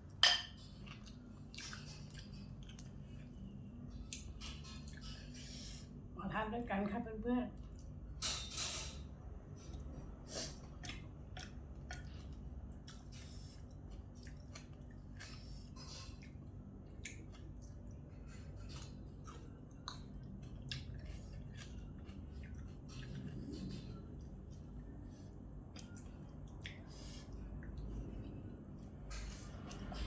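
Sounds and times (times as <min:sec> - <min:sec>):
person chewing: 0:00.6 - 0:05.4, 0:10.4 - 0:28.1
wet mouth clicks and smacks: 0:10.8 - 0:12.2, 0:25.8 - 0:26.8.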